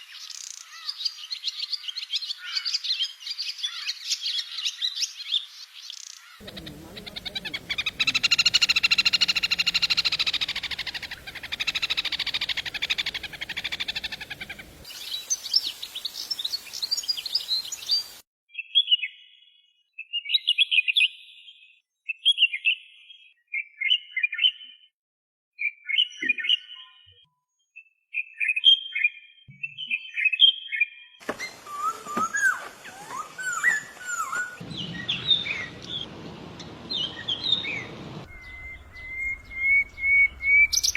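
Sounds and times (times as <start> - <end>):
bird chirping phrases: 0.0 - 24.9, 25.6 - 40.9
songbird calls: 6.0 - 18.2, 31.2 - 40.9
rapid high bird notes: 6.4 - 18.2, 31.2 - 40.9
whistled bird notes: 6.4 - 19.0, 28.2 - 40.9.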